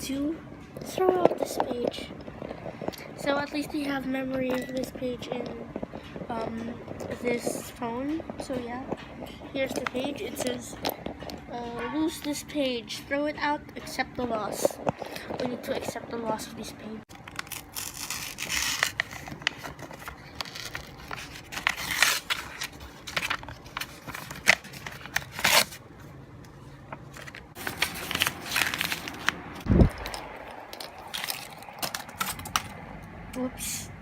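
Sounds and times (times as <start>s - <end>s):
paper ripping and crinkling: 17.1s - 25.8s, 26.9s - 32.7s.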